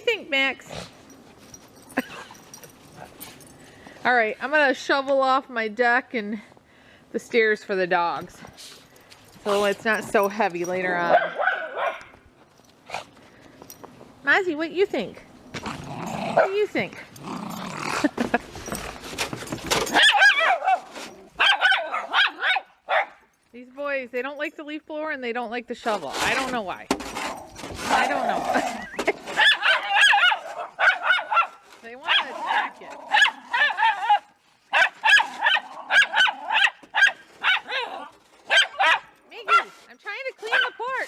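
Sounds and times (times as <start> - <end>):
snow shovel scraping a deck: 9.4 - 10.3, 25.8 - 38.9
dogs barking in high yaps: 11.1 - 12.2, 19.9 - 23.2, 29.3 - 39.8, 40.5 - 41.0.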